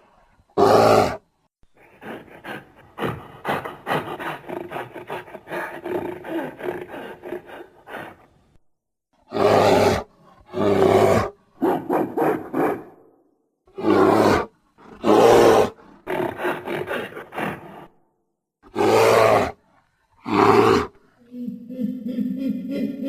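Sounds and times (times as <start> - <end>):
loud creature roars: 9.3 - 11.3, 13.8 - 17.6, 18.7 - 19.6, 20.2 - 21.0.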